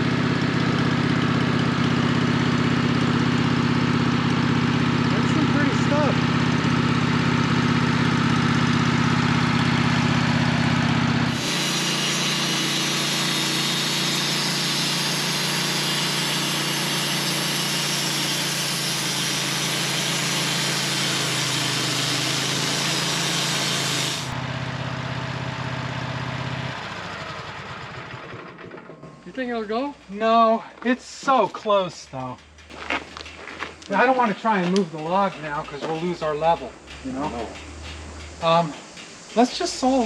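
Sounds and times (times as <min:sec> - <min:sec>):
sawmill engine running: 0:00.0 - 0:40.0
saw blade cutting log: 0:11.2 - 0:24.4.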